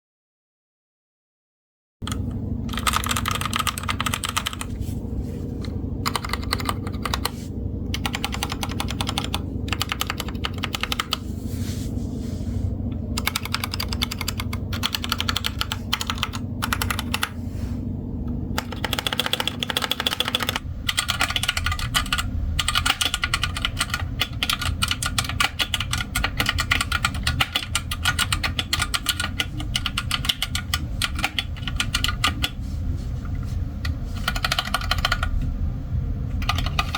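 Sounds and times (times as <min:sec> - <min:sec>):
mechanical keyboard typing: 0:02.0 - 0:04.8, 0:05.6 - 0:11.2, 0:13.0 - 0:17.4, 0:18.5 - 0:32.6, 0:33.8 - 0:35.5, 0:36.3 - 0:36.9.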